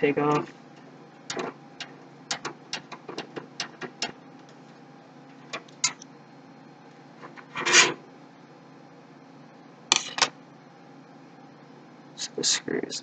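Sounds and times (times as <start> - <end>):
metal scraping rub: 7.2 - 8.0.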